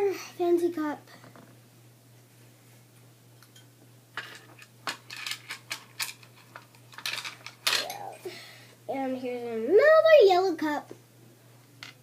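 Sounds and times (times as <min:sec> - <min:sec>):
plastic toy dishes clattering: 0:04.2 - 0:07.9.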